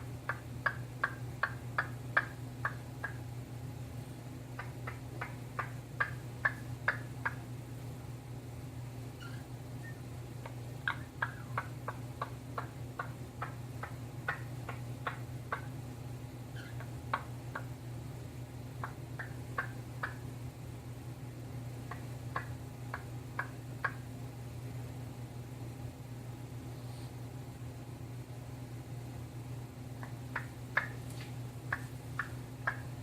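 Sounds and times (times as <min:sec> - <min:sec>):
steady low hum: 0:00.0 - 0:33.0
parrot clicking: 0:31.7 - 0:32.9.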